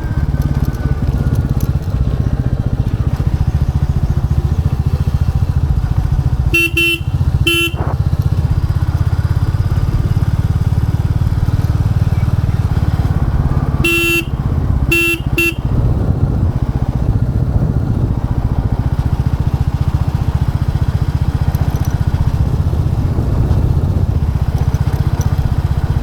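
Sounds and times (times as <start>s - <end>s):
motorcycle engine running: 0.0s - 26.0s
horn honking: 6.1s - 8.4s, 12.2s - 16.1s.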